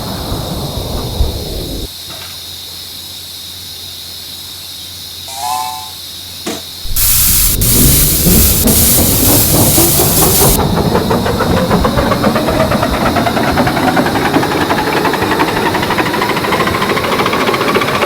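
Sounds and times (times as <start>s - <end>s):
faint steady hiss: 1.8s - 10.6s
loud hiss of escaping steam: 6.8s - 10.6s
steam locomotive toot: 6.8s - 13.8s.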